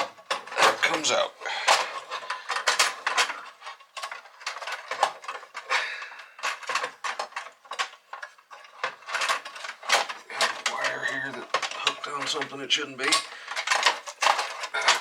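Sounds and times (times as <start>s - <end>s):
clicks and knocks of hard parts: 0.0s - 15.0s.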